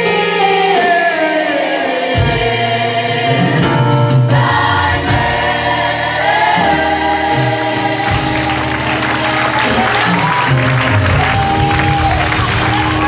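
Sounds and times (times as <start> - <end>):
gospel choir singing with music: 0.0 - 13.0
applause or cheering: 8.0 - 13.0.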